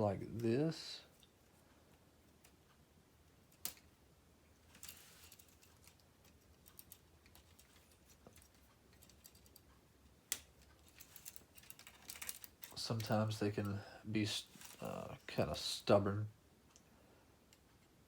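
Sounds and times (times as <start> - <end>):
plastic pieces clicking and rattling: 4.6 - 9.7, 10.3 - 13.2, 14.4 - 14.9.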